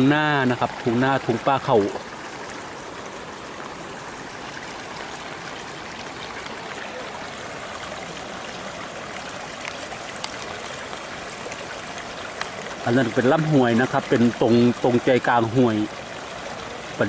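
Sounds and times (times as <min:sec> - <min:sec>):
rushing creek water: 0:00.0 - 0:17.0.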